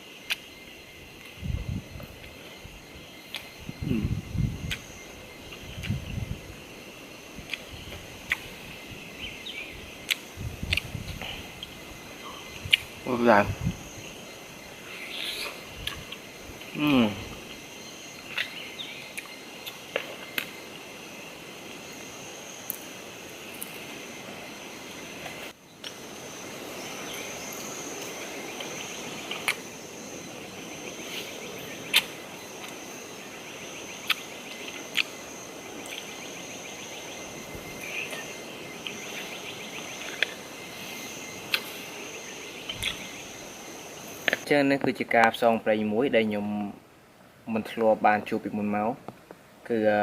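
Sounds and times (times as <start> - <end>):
insects chirring: 0.0 - 50.0.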